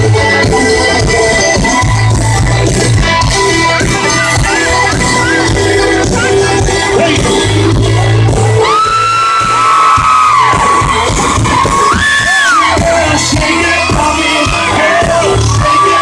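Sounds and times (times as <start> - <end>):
live country band: 0.0 - 16.0
crowd whooping: 8.6 - 16.0.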